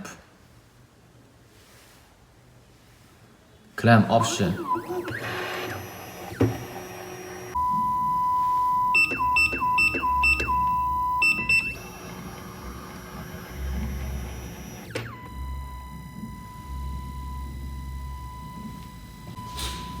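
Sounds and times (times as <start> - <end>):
machine steady beep tone: 4.1 - 20.0
short higher beeps: 4.2 - 5.3, 7.6 - 11.8, 16.5 - 20.0.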